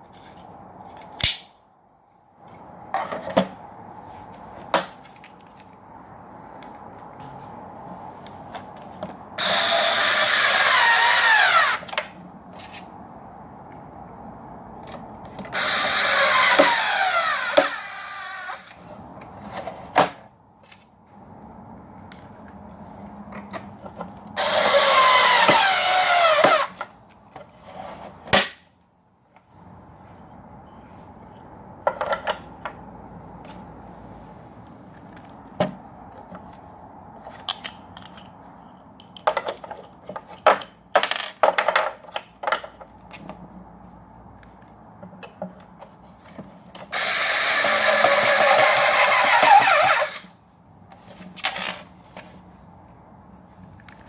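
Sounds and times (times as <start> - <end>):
power drill running: 9.4 - 11.9, 15.6 - 18.7, 24.4 - 26.7, 47.0 - 50.2
clicks and knocks of parts handled: 21.7 - 24.3, 34.6 - 43.4, 53.6 - 54.0.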